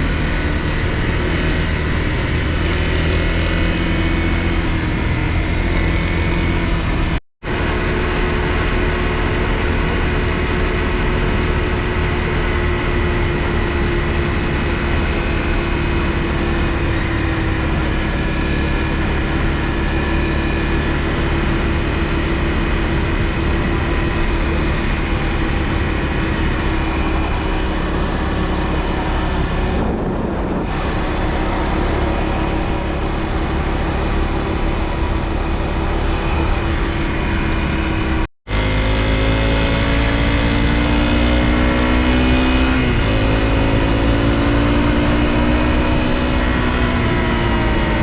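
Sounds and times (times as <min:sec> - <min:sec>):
wind rumble on microphone: 0:00.0 - 0:38.3
motorcycle engine running: 0:00.0 - 0:48.0.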